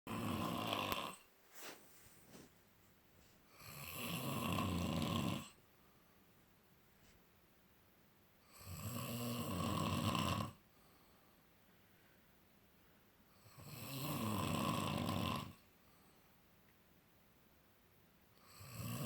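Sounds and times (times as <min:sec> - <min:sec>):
snoring: 0:00.1 - 0:01.3, 0:03.5 - 0:05.6, 0:08.4 - 0:10.6, 0:13.4 - 0:15.6, 0:18.4 - 0:19.0.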